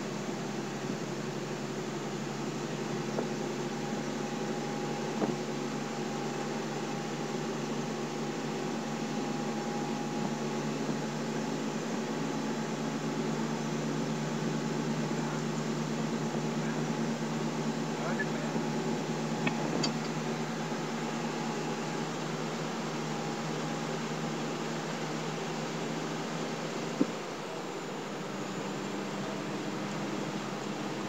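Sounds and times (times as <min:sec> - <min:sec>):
diesel truck engine running: 0:09.4 - 0:31.0.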